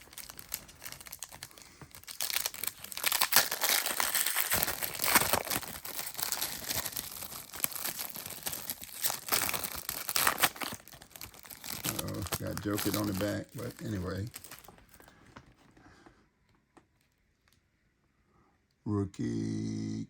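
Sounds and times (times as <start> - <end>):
plastic wrappers crinkling and tearing: 0.0 - 15.8.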